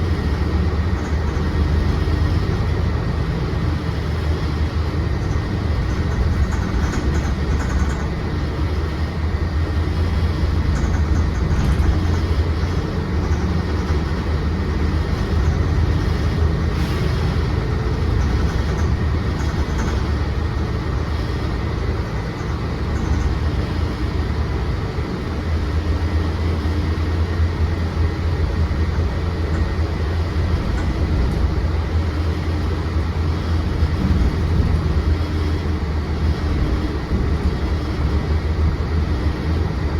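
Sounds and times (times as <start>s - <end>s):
bus engine and road rumble: 0.0s - 39.9s.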